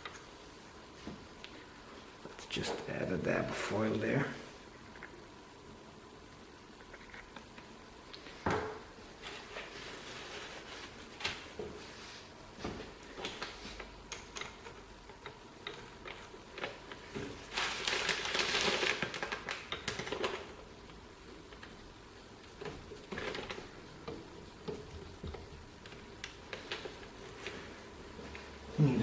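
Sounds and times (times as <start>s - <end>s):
rustling scraping noise: 9.2s - 12.4s.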